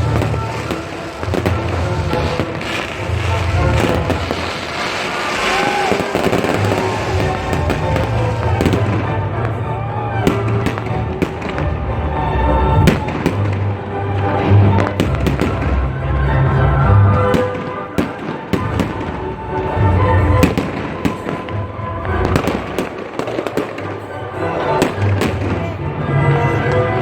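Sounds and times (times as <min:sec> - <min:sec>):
loud music: 0:00.0 - 0:20.8
fireworks bangs and crackles: 0:00.0 - 0:27.0.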